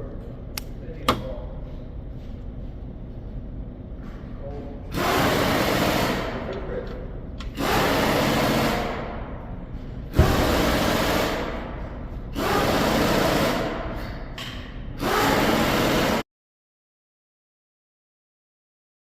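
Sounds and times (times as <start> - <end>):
power tool running: 4.9 - 6.6, 7.4 - 9.3, 10.1 - 14.1, 15.0 - 16.2.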